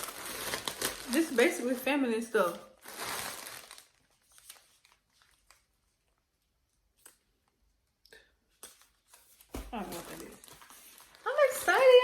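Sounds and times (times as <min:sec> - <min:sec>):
packaged toiletries being handled: 0:00.0 - 0:05.8, 0:08.7 - 0:12.0.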